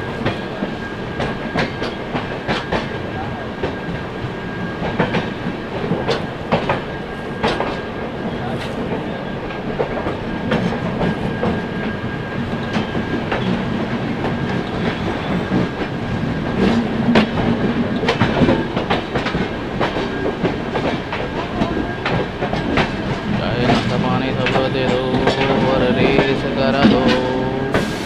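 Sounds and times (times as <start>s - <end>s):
train wheels rumbling on track: 0.0s - 28.0s
wheels clicking over rail joints: 8.6s - 27.9s.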